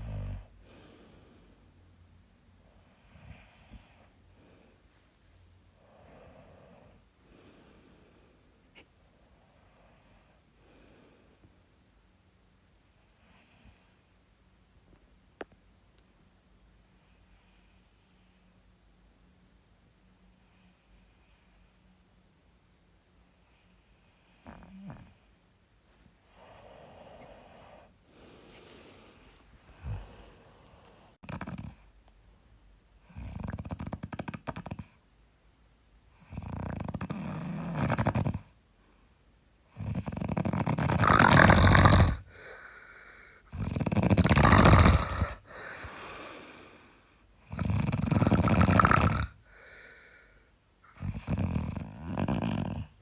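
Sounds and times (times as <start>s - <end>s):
man snoring faintly: 0.0s - 1.5s, 23.3s - 25.5s, 26.2s - 32.0s, 36.1s - 38.6s, 39.7s - 53.0s
short snort: 50.9s - 53.0s.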